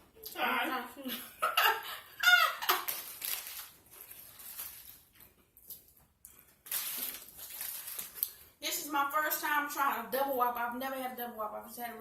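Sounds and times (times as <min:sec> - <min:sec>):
chewing and smacking: 0:02.9 - 0:08.4.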